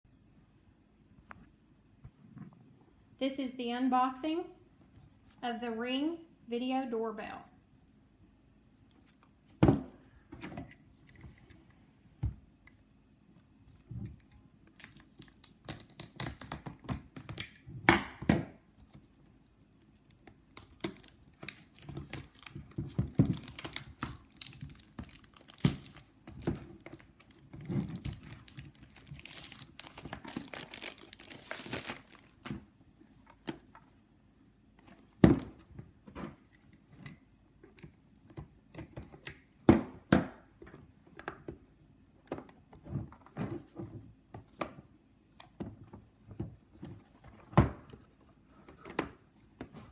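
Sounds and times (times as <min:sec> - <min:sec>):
packaging crinkling and tearing: 0:20.5 - 0:32.4.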